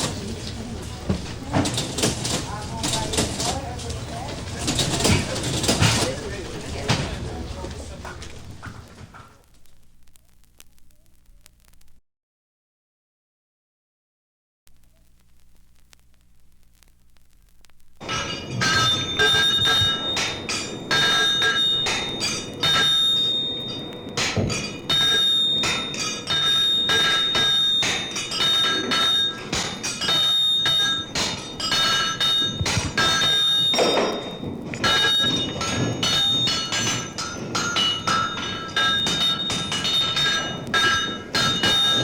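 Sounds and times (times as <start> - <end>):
metal struck with bell-like ring: 18.0 - 42.0.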